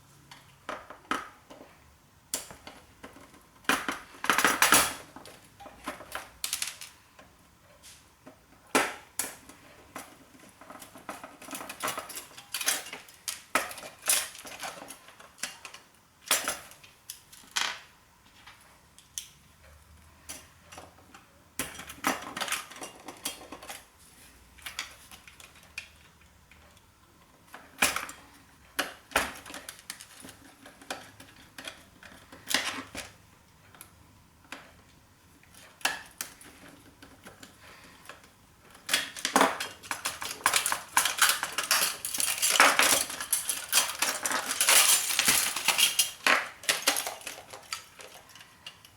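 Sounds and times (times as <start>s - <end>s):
small metal parts clattering: 2.4s - 7.2s, 9.2s - 17.9s, 20.2s - 26.2s, 35.5s - 48.9s.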